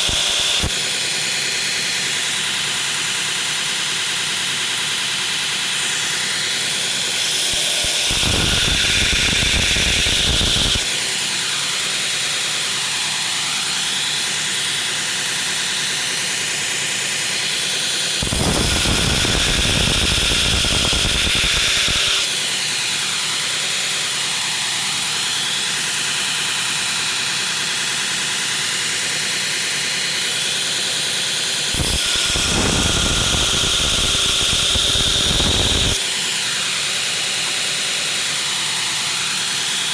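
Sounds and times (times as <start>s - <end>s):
belt grinder running: 0.0s - 39.9s
steel blade grinding on belt: 31.7s - 37.5s.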